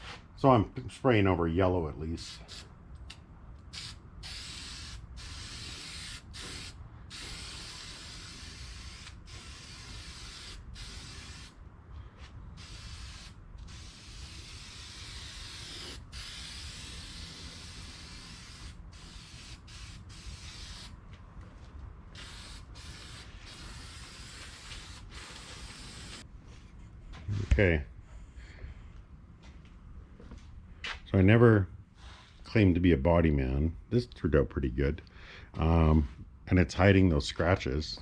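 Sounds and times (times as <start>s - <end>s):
spray paint can hissing: 3.7s - 11.6s, 12.6s - 20.9s, 22.2s - 26.2s.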